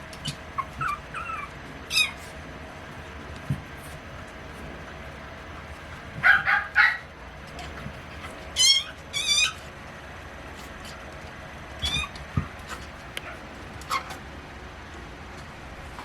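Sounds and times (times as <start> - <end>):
puppies squealing high-pitched: 0.0 - 2.4, 6.2 - 9.7, 11.8 - 14.2
puppies yipping: 0.0 - 9.7, 11.8 - 14.2.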